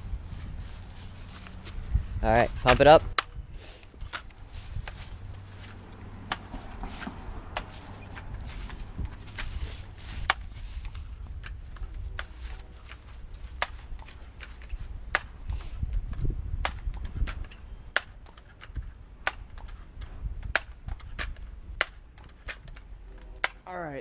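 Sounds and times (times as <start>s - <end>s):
low handling noise: 0.0s - 23.7s
air rifle pump lever clacks: 10.2s - 23.6s.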